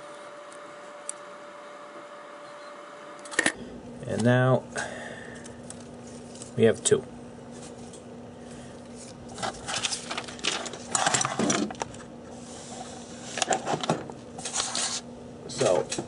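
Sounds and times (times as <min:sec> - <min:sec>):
faint steady hum: 0:00.0 - 0:16.0
paper rustling: 0:05.6 - 0:06.9, 0:08.9 - 0:11.8.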